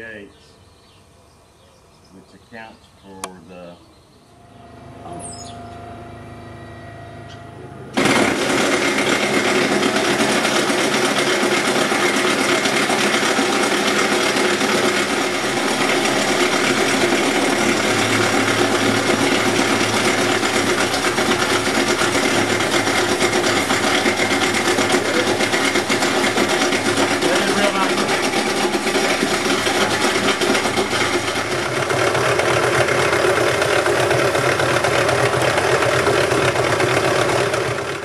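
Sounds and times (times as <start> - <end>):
power tool chattering: 8.0 - 38.0.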